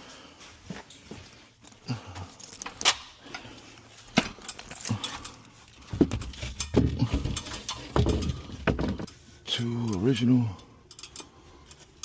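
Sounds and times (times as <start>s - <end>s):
heavy thumps of ladder: 5.8s - 9.1s
ladder knocking and clattering: 5.8s - 9.2s.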